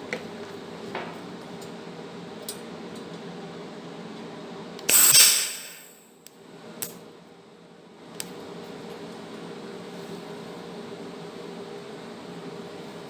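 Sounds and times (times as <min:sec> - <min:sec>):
welder hissing crackle: 0:04.9 - 0:06.0.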